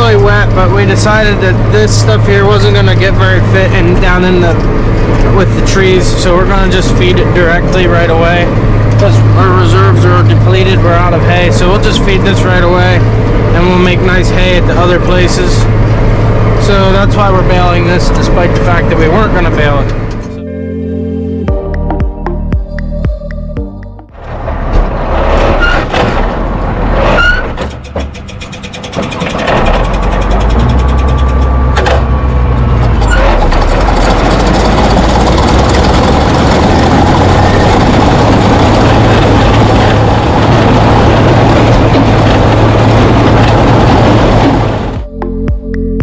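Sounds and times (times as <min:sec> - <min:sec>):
tractor and hay baler running: 0:00.0 - 0:20.4, 0:24.2 - 0:45.0
machine squeals: 0:25.1 - 0:26.2, 0:26.9 - 0:44.9.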